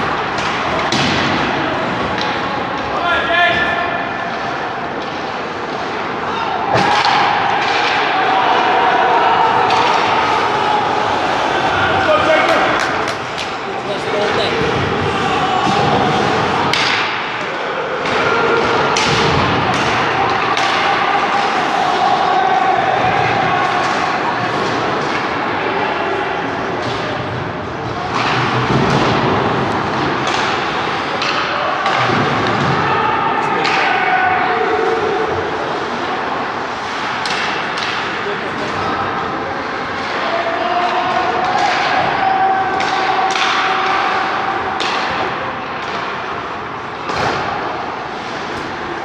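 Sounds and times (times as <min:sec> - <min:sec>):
sticks and puck clacking: 0:00.0 - 0:02.9, 0:06.8 - 0:25.8, 0:26.7 - 0:32.8, 0:33.6 - 0:49.0
skating and play din: 0:00.0 - 0:49.0
thud: 0:47.1 - 0:47.7.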